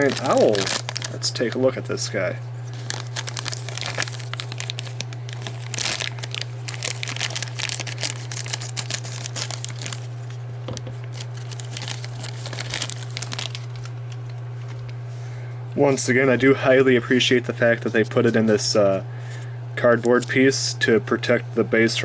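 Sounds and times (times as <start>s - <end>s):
plastic packaging crinkling: 0.0s - 1.8s, 2.6s - 14.9s
low electrical hum: 0.0s - 22.0s.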